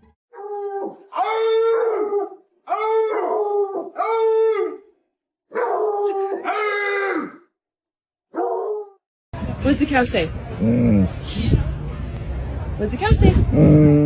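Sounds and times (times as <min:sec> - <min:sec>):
dog howling: 0:00.3 - 0:04.9, 0:05.5 - 0:07.4, 0:08.4 - 0:09.0.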